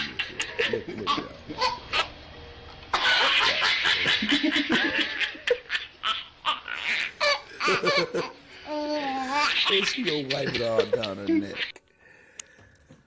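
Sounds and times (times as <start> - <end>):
person laughing hard: 3.1 - 5.7, 7.4 - 8.4.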